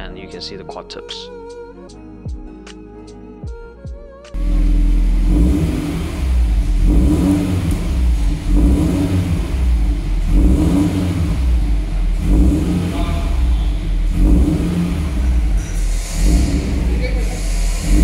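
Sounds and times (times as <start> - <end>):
car engine revving: 4.4 - 18.0.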